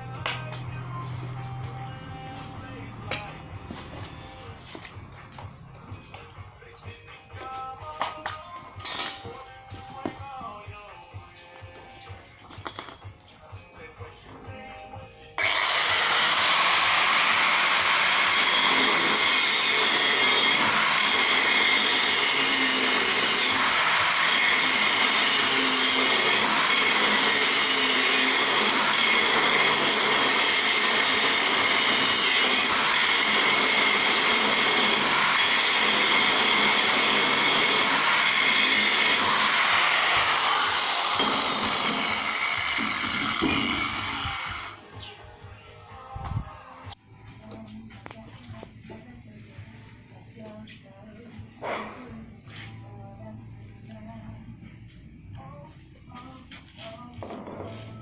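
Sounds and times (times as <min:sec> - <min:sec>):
mechanical grinding with high tones: 0:15.4 - 0:44.8.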